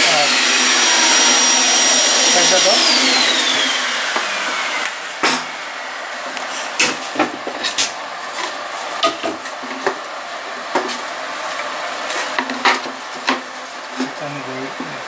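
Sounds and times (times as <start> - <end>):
shop equipment background noise: 0.0 - 15.0
wood pieces and tools knocking: 9.0 - 10.0.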